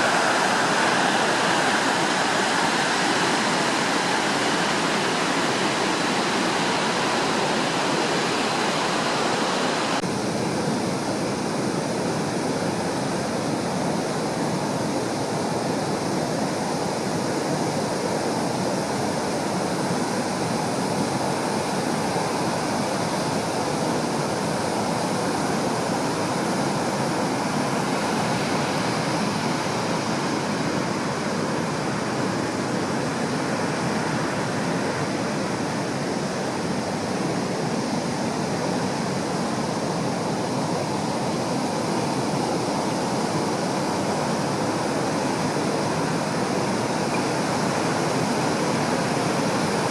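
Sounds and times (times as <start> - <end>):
surf breaking on shore: 0.0 - 10.1.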